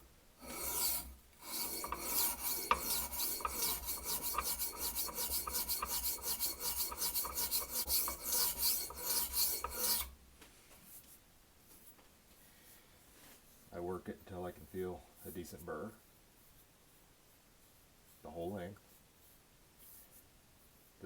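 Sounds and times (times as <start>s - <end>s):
knife scraping on sharpening stone: 0.4s - 10.1s.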